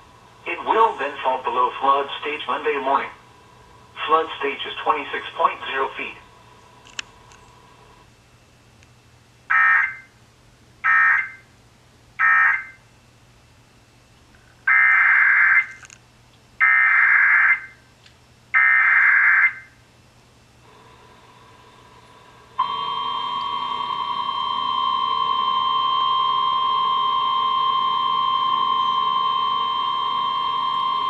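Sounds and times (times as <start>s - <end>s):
steady single-pitch attention tone: 22.6s - 31.0s.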